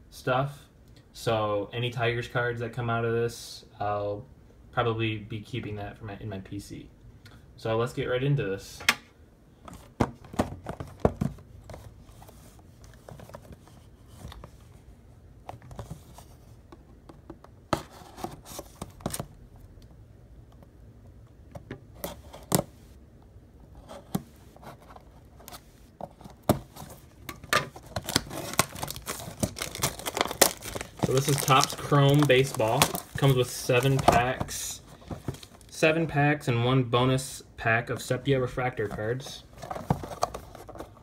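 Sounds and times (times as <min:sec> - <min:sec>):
plastic wrap rustling: 0:24.5 - 0:35.9, 0:38.0 - 0:41.0.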